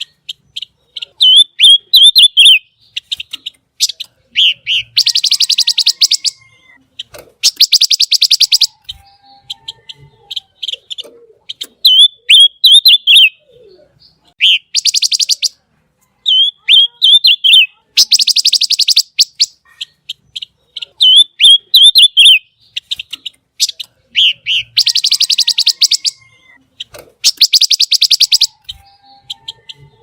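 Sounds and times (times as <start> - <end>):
songbird singing: 0.0 - 30.0
dry rattling bird trills: 18.0 - 26.2.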